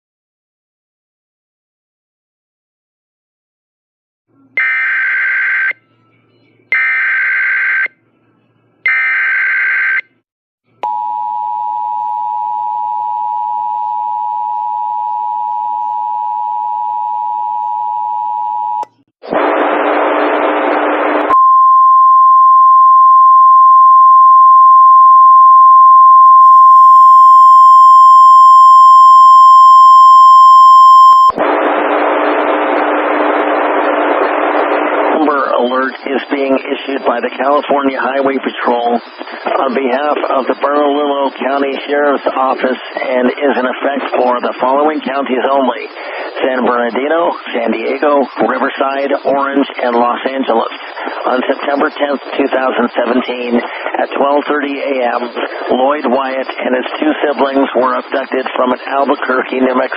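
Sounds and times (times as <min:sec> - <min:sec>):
two-tone attention signal: 0:21.3 - 0:31.4.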